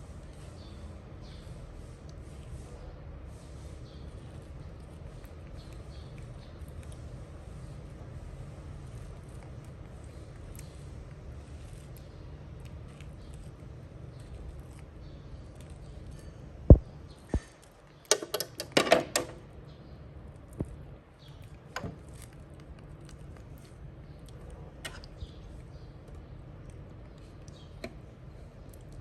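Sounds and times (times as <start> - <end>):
low steady hum: 0.0 - 29.0
clatter of clicks and rattles: 18.1 - 19.4.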